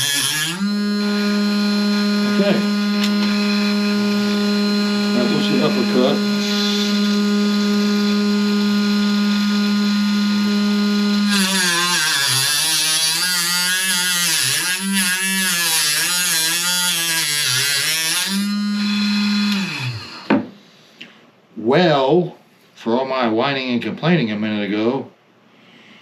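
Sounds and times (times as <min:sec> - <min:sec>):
electric motor humming: 0:00.0 - 0:20.5
cutting wheel grinding hiss: 0:04.2 - 0:07.2.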